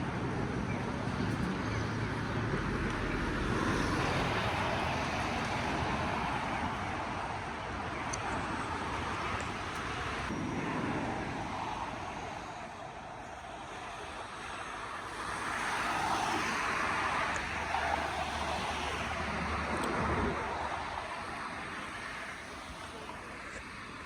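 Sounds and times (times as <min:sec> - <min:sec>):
cars passing along street: 0:00.0 - 0:24.0.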